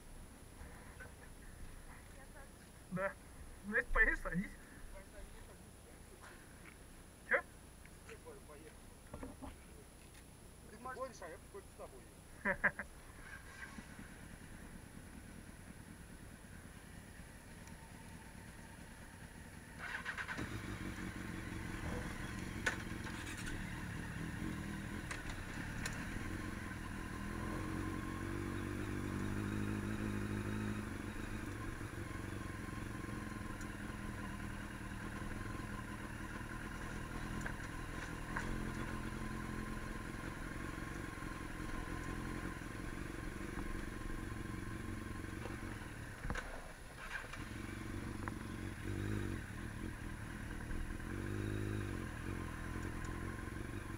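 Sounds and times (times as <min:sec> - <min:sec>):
vehicle engine running: 0:12.3 - 0:53.9.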